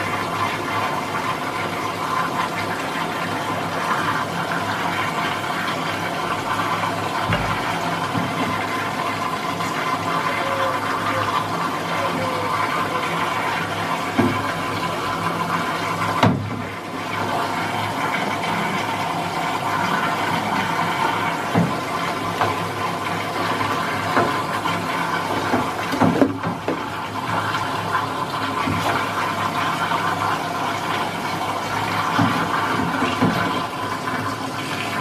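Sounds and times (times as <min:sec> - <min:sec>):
water rushing into washing machine: 0:00.0 - 0:35.0
brief knocks: 0:07.3 - 0:07.7.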